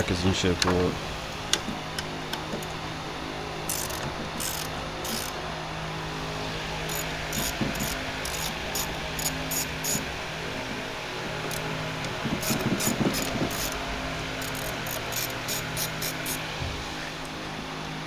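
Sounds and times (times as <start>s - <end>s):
ratchet wrench clicking: 3.7s - 5.4s, 6.9s - 10.0s, 12.4s - 13.8s, 14.4s - 16.4s.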